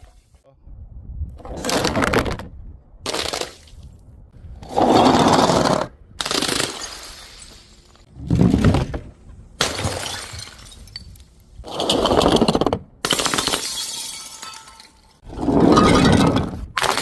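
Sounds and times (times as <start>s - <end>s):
glass bottles shattering: 6.5s - 8.1s, 9.6s - 12.4s, 13.1s - 17.0s.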